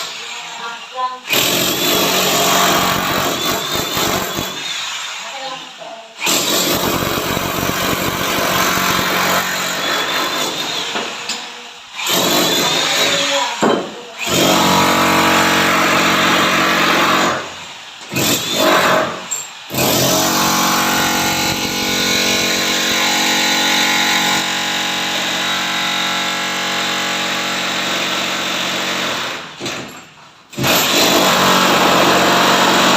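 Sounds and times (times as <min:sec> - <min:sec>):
power tool motor running: 0:14.2 - 0:17.4, 0:18.2 - 0:29.3.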